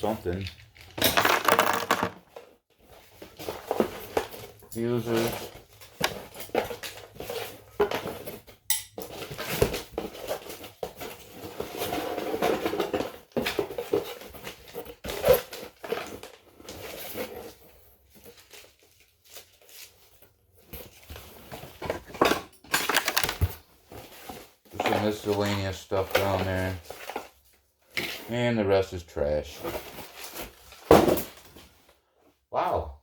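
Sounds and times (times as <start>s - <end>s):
small metal parts clattering: 0.1s - 2.3s, 22.1s - 23.6s.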